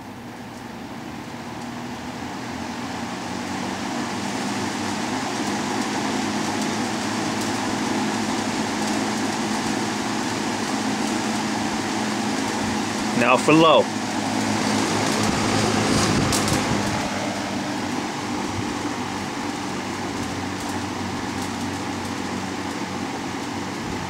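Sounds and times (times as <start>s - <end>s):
box fan rushing air: 0.0s - 24.0s
fan motor hum: 0.0s - 24.0s.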